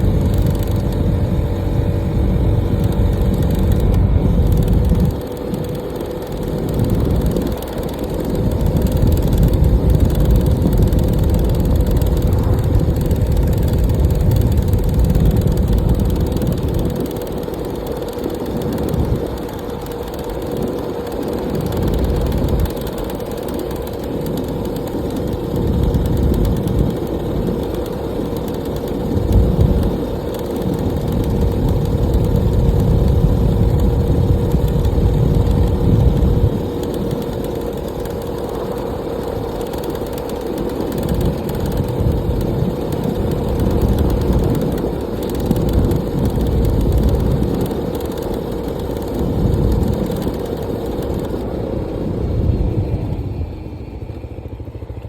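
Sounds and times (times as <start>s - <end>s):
low rumble on microphone: 0.0s - 17.8s
motorcycle engine running: 0.0s - 55.0s.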